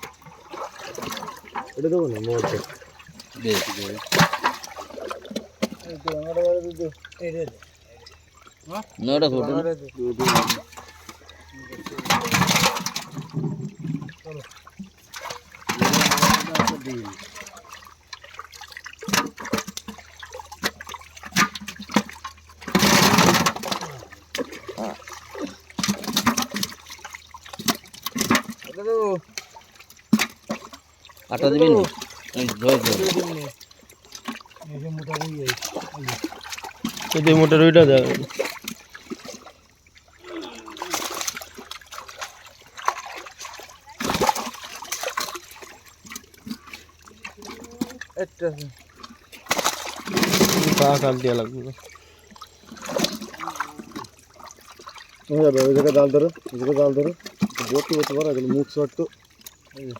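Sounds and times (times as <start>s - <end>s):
water splashing and sloshing: 0.0s - 59.9s.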